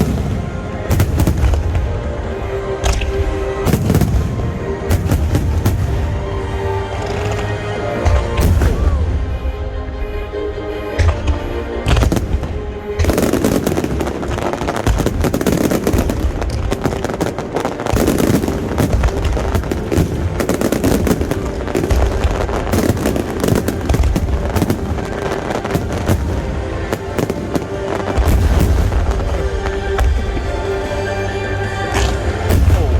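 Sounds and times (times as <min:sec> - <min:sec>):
fireworks crackling bangs: 0:00.0 - 0:02.2, 0:11.0 - 0:31.0, 0:32.0 - 0:32.9
fireworks low booms: 0:10.9 - 0:30.6.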